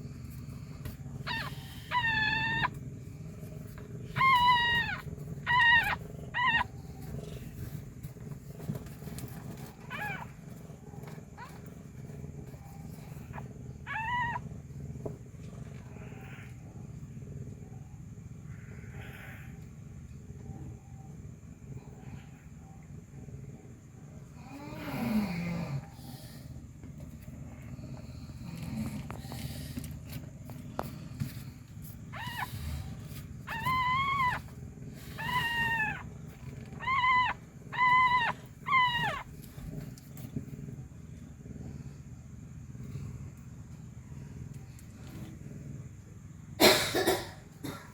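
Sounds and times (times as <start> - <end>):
steady low hum: 0.0 - 47.9
cat mewing: 1.2 - 2.8, 4.0 - 7.5, 32.1 - 39.3.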